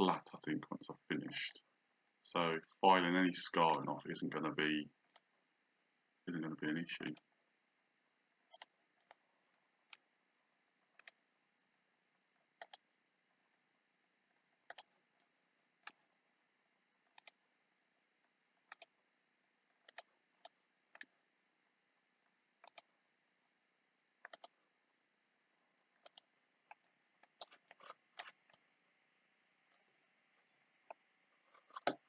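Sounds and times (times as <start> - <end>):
computer mouse clicks: 5.0 - 5.3, 8.4 - 9.2, 9.8 - 10.1, 10.9 - 11.2, 12.4 - 12.9, 14.6 - 16.2, 17.0 - 17.5, 18.6 - 19.0, 19.7 - 21.2, 22.6 - 22.9, 24.2 - 24.6, 25.9 - 28.7, 30.8 - 32.0.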